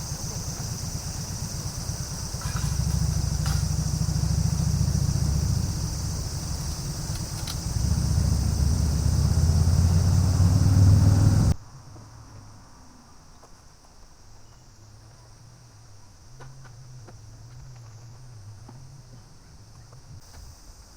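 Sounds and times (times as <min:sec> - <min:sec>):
car engine and road noise: 0:00.0 - 0:11.6.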